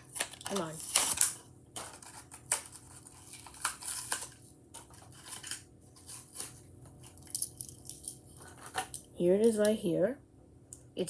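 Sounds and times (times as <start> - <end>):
plastic packaging being torn open: 0.0 - 6.6.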